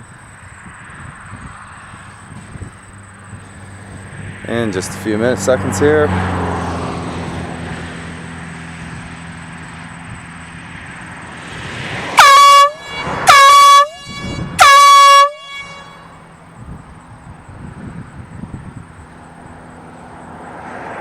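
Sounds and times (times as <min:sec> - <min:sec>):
air horn blasts: 0:12.1 - 0:16.5.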